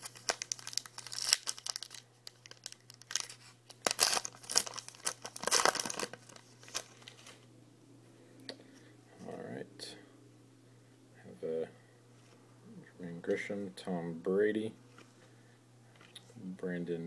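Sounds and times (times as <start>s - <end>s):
foil wrapper crinkling and tearing: 0.0s - 7.4s.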